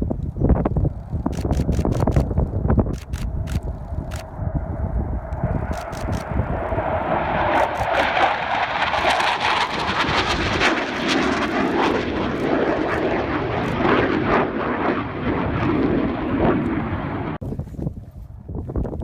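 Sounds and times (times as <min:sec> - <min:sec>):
jet engines roaring: 0:00.9 - 0:17.4.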